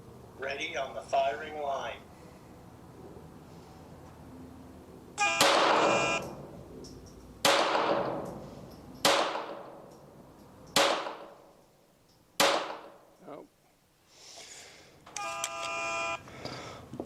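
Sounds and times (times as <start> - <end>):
pitched start tone: 5.2 - 6.4
pistol shots: 5.3 - 6.4, 7.4 - 8.4, 9.0 - 9.9, 10.7 - 11.5, 12.4 - 13.0.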